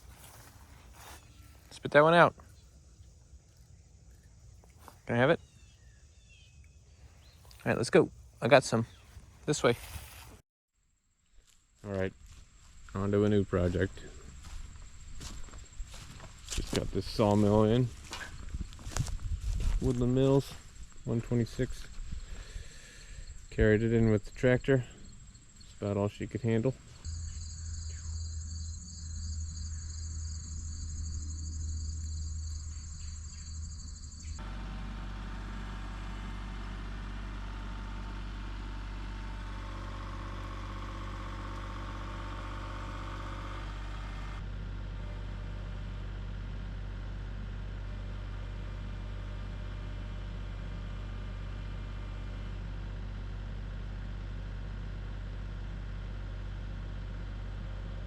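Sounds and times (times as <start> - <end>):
tractor engine idling: 0.0 - 2.4, 11.9 - 58.0
crickets chirping: 0.0 - 9.2, 10.8 - 19.8, 21.8 - 34.4.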